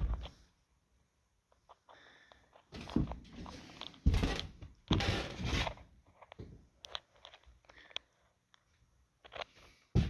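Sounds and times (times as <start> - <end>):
rubbing and scraping: 2.8 - 6.2.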